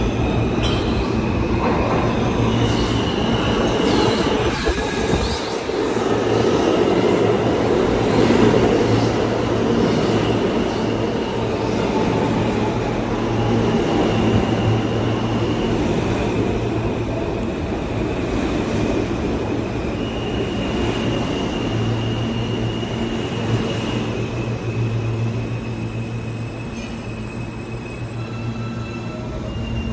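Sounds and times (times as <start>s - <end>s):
subway train wheels rumbling: 0.0s - 29.9s
high-pitched wheel squeal: 19.9s - 29.9s.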